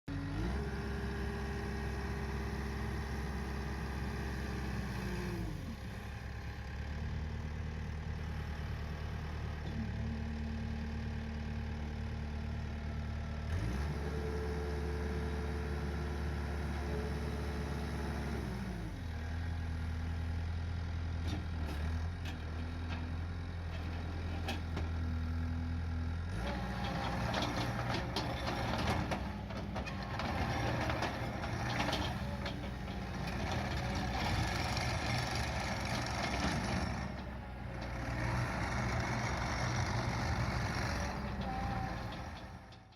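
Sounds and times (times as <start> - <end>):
diesel engine revving: 0.1 - 6.3, 13.5 - 19.8, 25.0 - 42.9.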